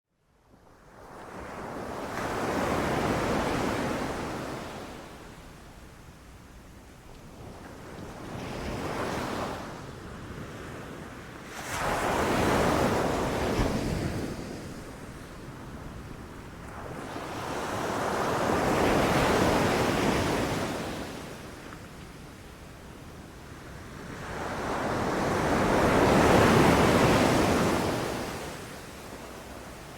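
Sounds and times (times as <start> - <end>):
ocean waves breaking: 24.2 - 29.9.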